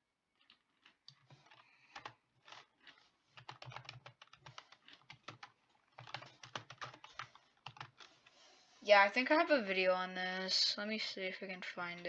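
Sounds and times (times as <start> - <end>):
keyboard typing: 0.3 - 8.4.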